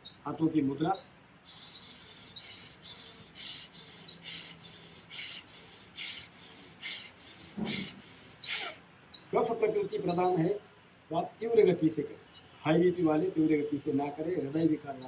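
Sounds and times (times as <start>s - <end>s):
faint bird chirps: 0.0s - 10.5s
forceful breathing through nose: 1.5s - 8.8s.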